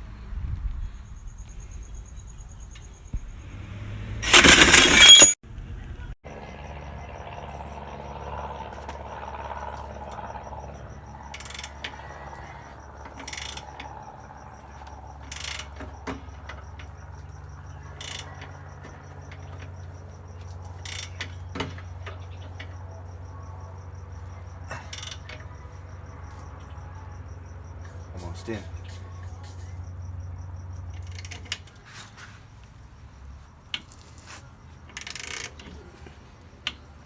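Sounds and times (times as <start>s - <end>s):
steady low hum: 0.0s - 37.0s
hand ratchet clicking: 8.8s - 22.8s, 24.2s - 25.6s, 30.8s - 32.2s, 33.7s - 36.9s.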